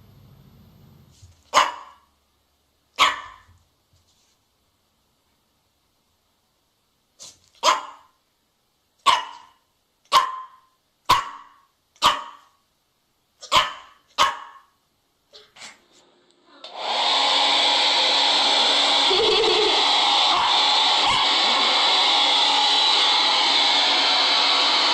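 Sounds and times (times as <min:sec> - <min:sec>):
dog barking sharply: 0:01.5 - 0:02.1, 0:03.0 - 0:03.5, 0:07.6 - 0:08.1, 0:09.0 - 0:12.6, 0:13.4 - 0:14.7
hair dryer blowing: 0:16.6 - 0:24.9.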